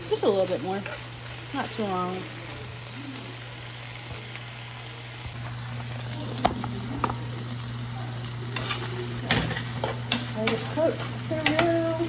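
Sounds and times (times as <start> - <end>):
chicken sizzling in a pan: 0.0 - 12.0
utensil clinking against pan: 8.6 - 11.8.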